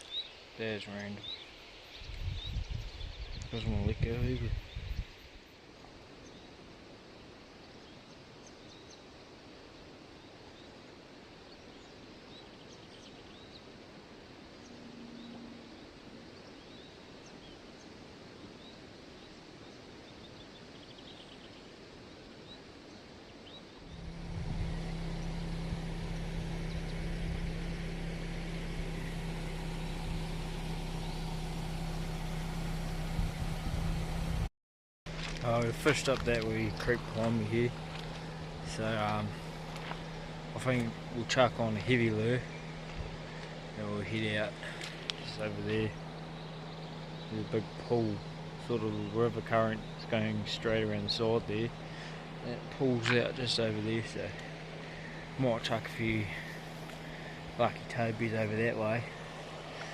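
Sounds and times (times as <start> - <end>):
constant low hum: 0.0 - 34.5, 35.1 - 59.9
steady rumble: 2.0 - 5.4, 23.7 - 34.5, 35.1 - 59.9
faint bird chirps: 14.4 - 24.1.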